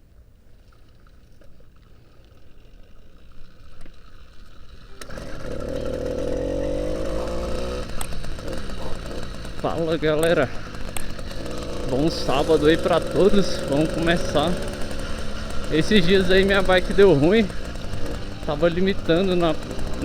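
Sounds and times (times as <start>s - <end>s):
two-stroke engine running: 4.8s - 20.0s.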